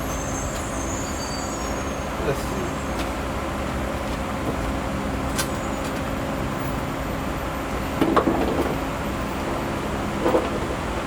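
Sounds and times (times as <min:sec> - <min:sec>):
car interior parts knocking and rattling: 0:08.0 - 0:08.8.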